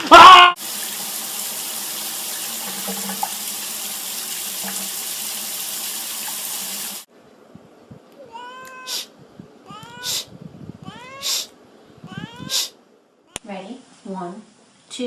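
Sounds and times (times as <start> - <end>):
water running from a tap: 0.6 - 7.1.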